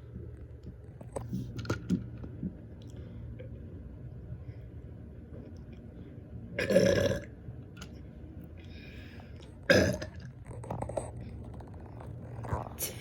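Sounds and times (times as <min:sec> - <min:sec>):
person burping loudly: 0:06.6 - 0:07.3, 0:09.7 - 0:10.2.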